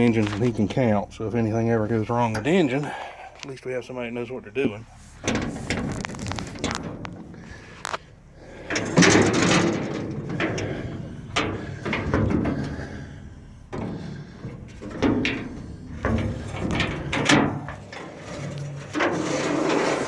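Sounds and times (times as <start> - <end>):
metal clunks and rattles: 5.2 - 20.0.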